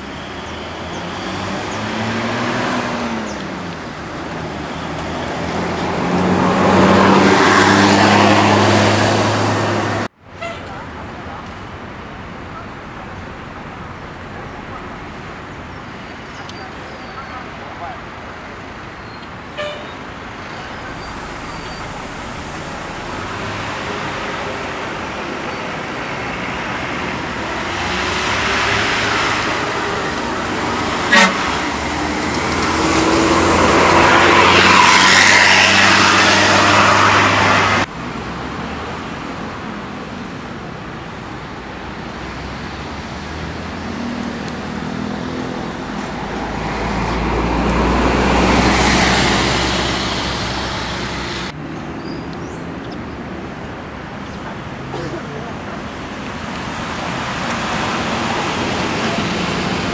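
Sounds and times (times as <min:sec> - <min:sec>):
buses passing: 0:00.0 - 0:59.9
short horn toot: 0:19.5 - 0:20.0, 0:31.0 - 0:31.7.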